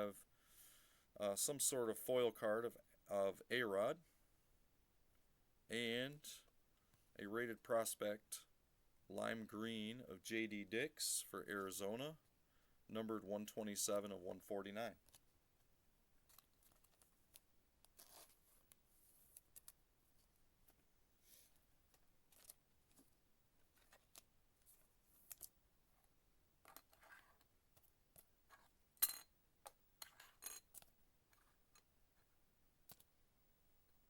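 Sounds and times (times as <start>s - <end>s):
trading cards handled: 16.2s - 19.8s, 21.4s - 23.1s, 23.7s - 25.5s.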